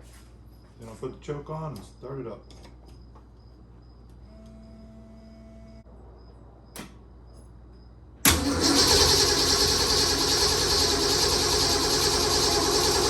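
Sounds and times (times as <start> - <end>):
starter motor cranking engine: 8.3 - 13.0.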